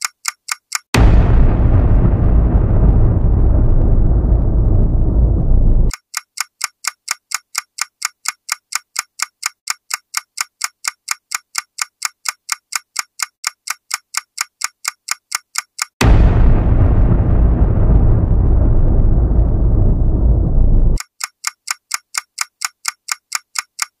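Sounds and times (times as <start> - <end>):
clock ticking: 0.0 - 1.0, 5.9 - 16.1, 21.0 - 24.0
loud boom: 1.0 - 5.9, 16.0 - 21.0.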